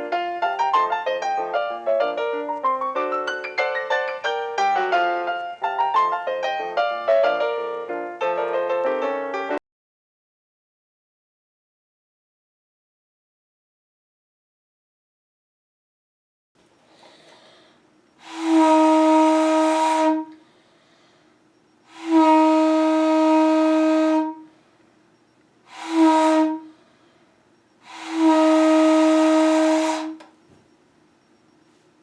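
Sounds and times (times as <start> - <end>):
train horn blasts: 18.2 - 20.5, 21.9 - 24.6, 25.7 - 26.8, 27.8 - 30.3.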